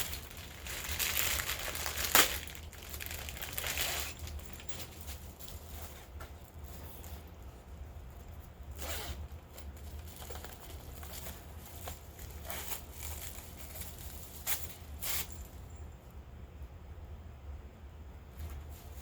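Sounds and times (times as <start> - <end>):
hands crinkling packaging: 0.0 - 5.6, 9.6 - 14.8
steady low hum: 0.0 - 19.0.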